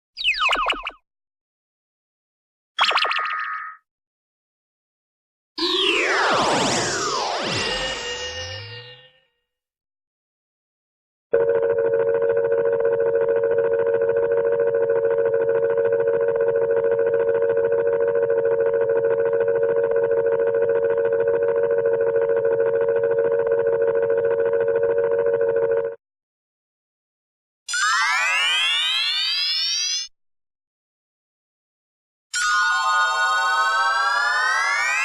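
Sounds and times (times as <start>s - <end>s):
buzzy electronic dial tone: 11.3s - 26.0s.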